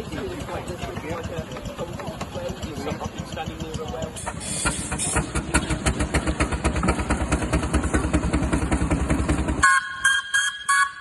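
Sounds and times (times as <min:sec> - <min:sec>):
steam engine chuffing: 0:00.0 - 0:11.0
steam whistle toots: 0:09.6 - 0:11.0.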